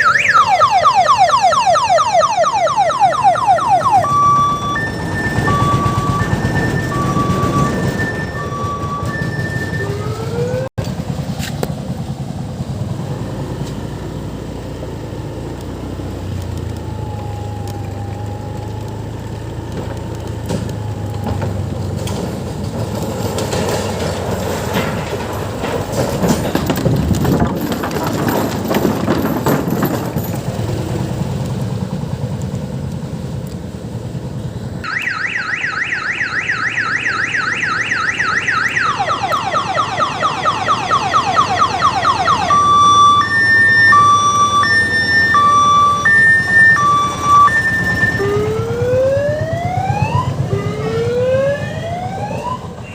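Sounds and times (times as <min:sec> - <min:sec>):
warbling electronic siren: 0:00.0 - 0:10.8, 0:16.5 - 0:21.7, 0:34.8 - 0:52.9
diesel engine running: 0:03.5 - 0:34.8, 0:36.6 - 0:52.9
clattering knocks: 0:19.8 - 0:30.9.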